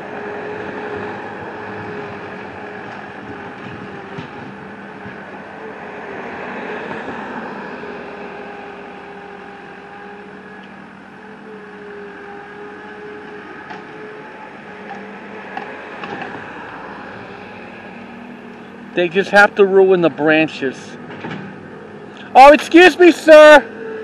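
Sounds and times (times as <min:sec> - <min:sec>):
brush cutter engine humming: 0:07.6 - 0:24.0.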